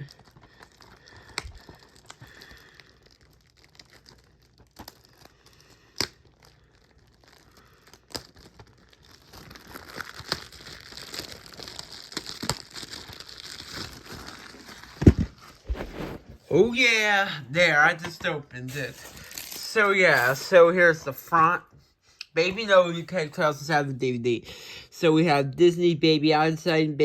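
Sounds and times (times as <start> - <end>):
plastic wrap crinkling: 0.0 - 21.2.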